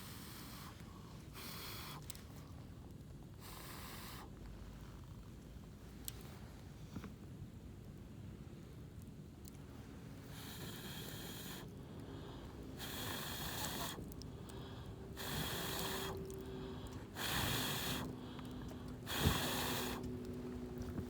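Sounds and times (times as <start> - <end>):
person blowing air on fire: 15.1 - 16.3, 17.1 - 18.2, 19.0 - 20.1.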